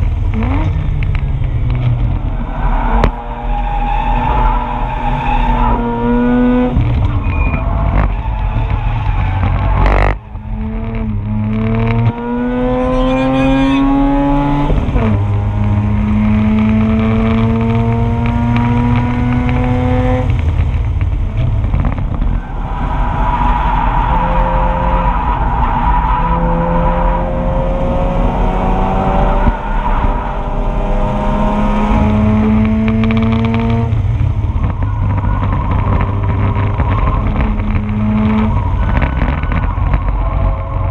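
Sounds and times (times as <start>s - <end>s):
rotary engine at full throttle: 26.2s - 40.9s.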